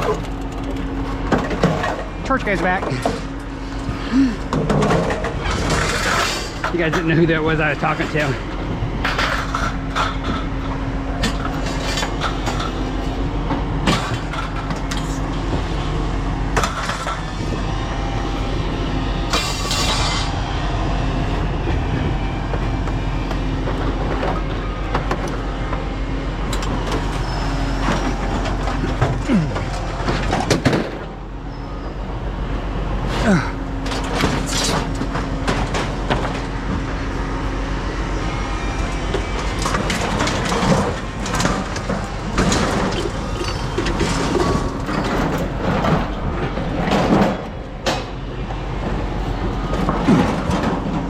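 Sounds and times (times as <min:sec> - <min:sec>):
vehicle engine rumbling: 0:00.0 - 0:51.0
knocks and rattles: 0:04.2 - 0:12.9, 0:39.4 - 0:48.2.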